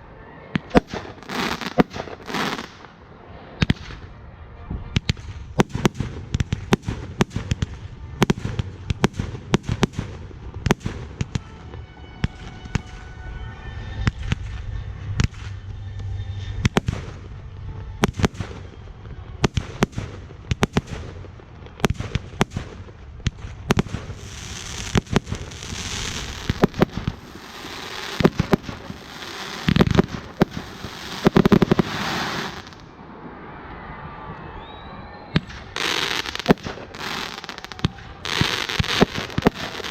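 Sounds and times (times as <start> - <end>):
fireworks bangs and pops: 0.6 - 2.9, 5.0 - 13.2, 14.0 - 32.8, 35.4 - 39.9
fountain firework hissing crackle: 18.0 - 32.8, 35.5 - 39.9.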